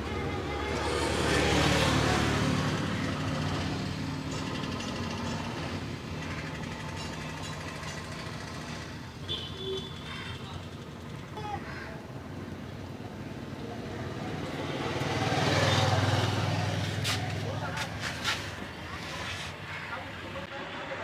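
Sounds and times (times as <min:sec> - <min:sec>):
vehicle engine passing: 0:13.8 - 0:19.5.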